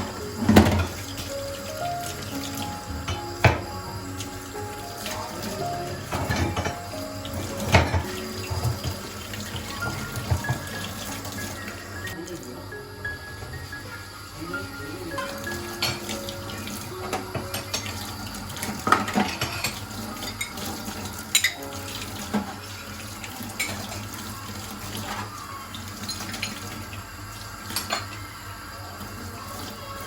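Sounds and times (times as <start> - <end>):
dishes and utensils clinking: 0.0 - 1.3, 1.9 - 11.7, 15.2 - 24.2, 24.8 - 26.9, 27.6 - 28.2
tap water running into sink: 0.0 - 12.6, 13.3 - 30.0.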